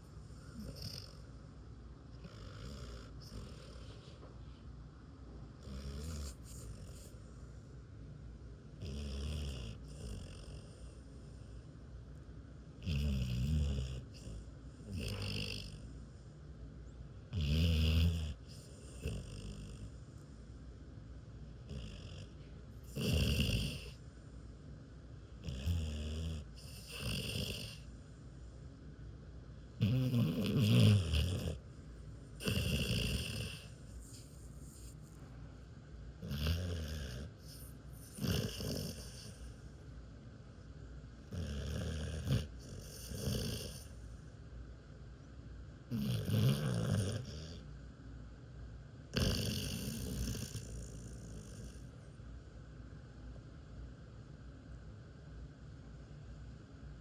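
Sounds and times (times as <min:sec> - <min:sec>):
dog snoring: 0:00.0 - 0:01.4, 0:02.1 - 0:04.3, 0:05.6 - 0:07.4, 0:08.8 - 0:11.7, 0:12.8 - 0:16.4, 0:17.3 - 0:20.3, 0:21.6 - 0:24.1, 0:25.4 - 0:28.0, 0:29.8 - 0:35.3, 0:36.2 - 0:39.8, 0:41.2 - 0:44.3, 0:45.9 - 0:47.8, 0:49.1 - 0:52.1
dog breathing: 0:02.2 - 0:04.6, 0:05.6 - 0:07.6, 0:29.9 - 0:39.8.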